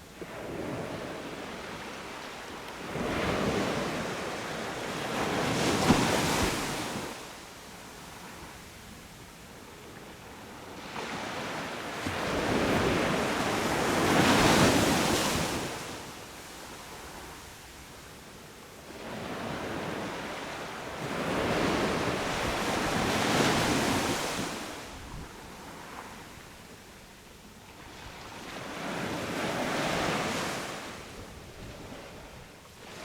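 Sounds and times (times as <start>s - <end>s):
sea waves crashing on beach: 0.2s - 7.4s, 10.7s - 17.3s, 19.0s - 25.0s.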